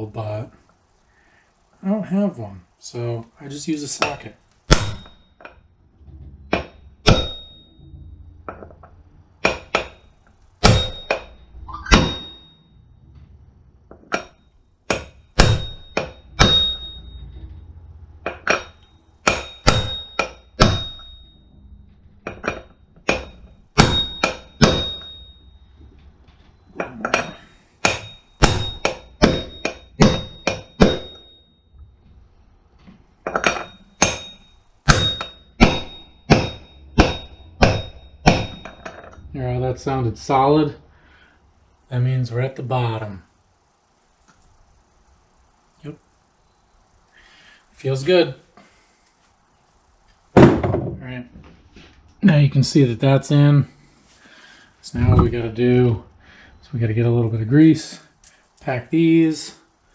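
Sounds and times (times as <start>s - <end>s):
hammer striking metal socket: 4.0s - 5.6s, 6.5s - 7.8s, 8.5s - 12.7s, 13.9s - 17.5s, 18.2s - 21.4s, 22.2s - 25.6s, 26.4s - 31.5s, 33.2s - 39.2s.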